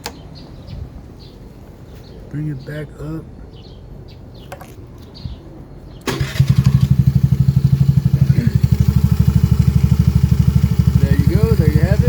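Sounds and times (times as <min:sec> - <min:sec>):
electric starter cranking: 0:06.0 - 0:12.0
scooter engine idling: 0:06.0 - 0:12.0.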